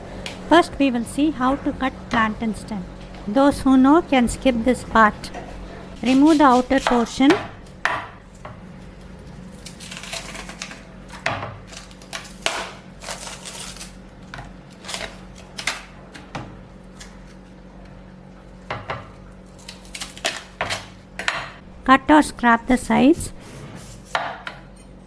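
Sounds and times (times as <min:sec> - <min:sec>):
banana stem layers snapping: 0:09.6 - 0:14.0, 0:14.7 - 0:15.9, 0:19.4 - 0:20.9.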